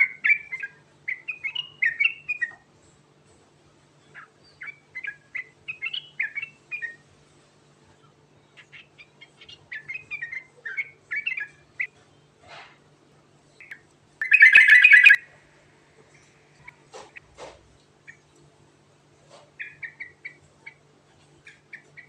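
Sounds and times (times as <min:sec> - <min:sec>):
bulbul chirping: 0:13.6 - 0:15.4.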